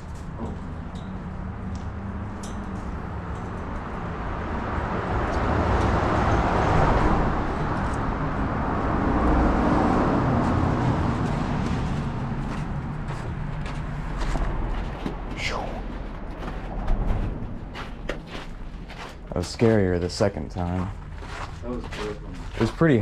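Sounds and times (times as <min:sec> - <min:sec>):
road traffic passing: 0:00.0 - 0:23.0
steady low rumble: 0:06.8 - 0:23.0.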